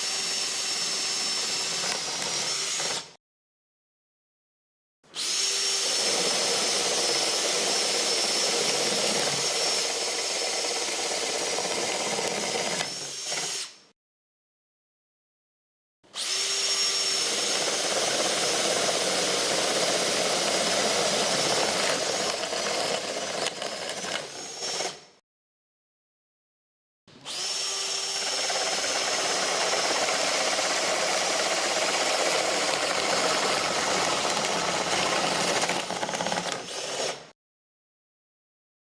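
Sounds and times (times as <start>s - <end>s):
power drill boring into wood: 0.0s - 3.2s, 5.2s - 13.8s, 16.2s - 25.1s, 27.2s - 37.4s.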